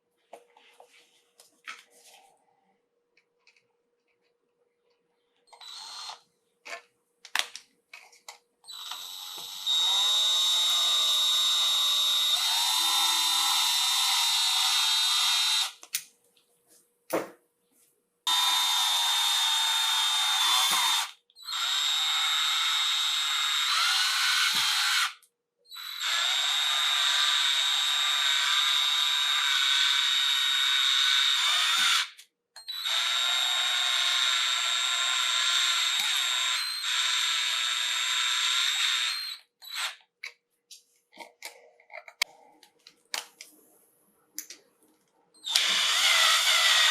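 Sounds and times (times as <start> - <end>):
drill-driver whining: 5.5 - 6.8, 8.7 - 15.8, 18.3 - 40.0, 45.4 - 46.9.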